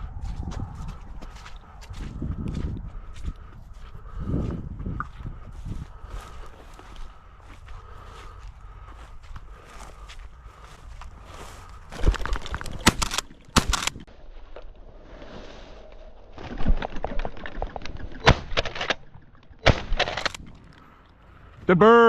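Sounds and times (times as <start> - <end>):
shotgun firing: 19.6 - 20.3.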